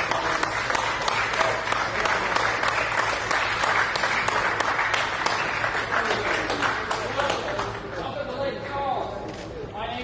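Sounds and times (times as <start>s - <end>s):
crowd applauding: 0.0s - 8.0s.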